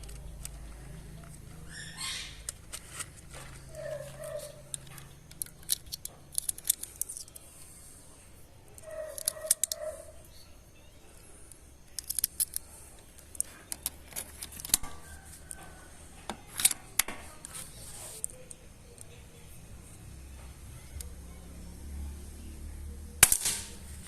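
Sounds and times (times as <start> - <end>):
rifle clicks and metallic clatter: 2.5 - 7.4, 8.8 - 10.0, 11.9 - 17.4, 23.2 - 23.8.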